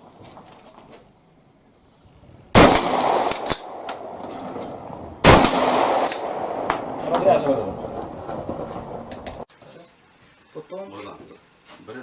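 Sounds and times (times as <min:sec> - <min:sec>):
shotgun blasts with echo: 0:02.5 - 0:09.4.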